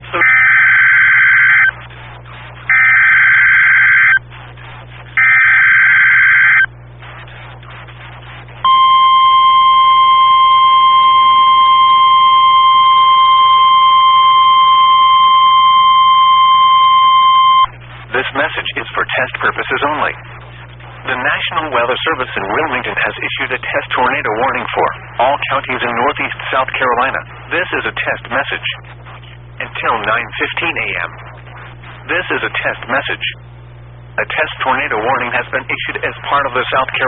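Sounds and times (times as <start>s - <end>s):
radio static: 0.0s - 37.0s
steady warning alarm tone: 0.1s - 1.9s, 2.7s - 4.2s, 5.2s - 6.7s, 8.6s - 17.7s.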